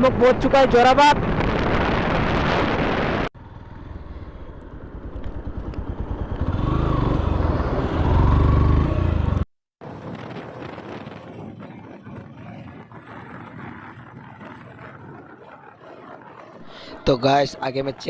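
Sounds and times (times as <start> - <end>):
motorcycle engine running: 3.4 - 9.4.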